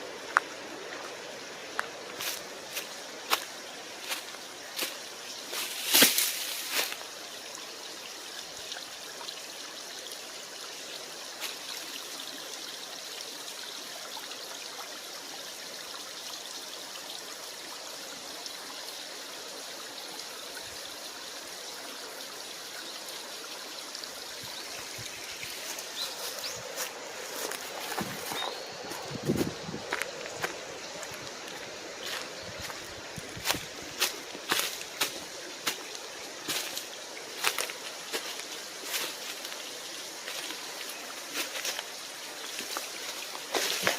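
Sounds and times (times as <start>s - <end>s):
waterfall rushing: 24.4s - 43.9s.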